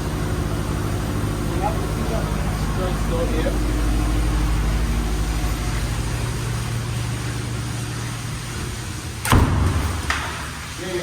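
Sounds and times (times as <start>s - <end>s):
low engine hum: 0.0s - 10.7s.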